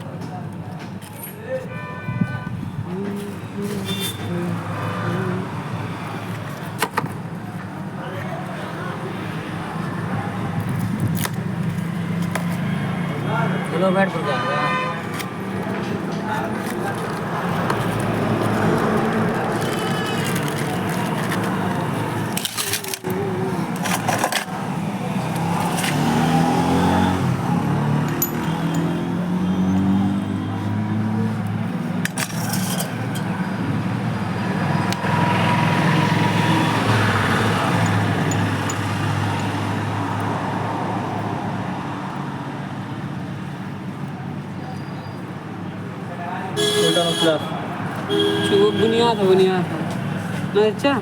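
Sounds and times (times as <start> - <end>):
motorcycle engine revving: 25.0 - 31.2.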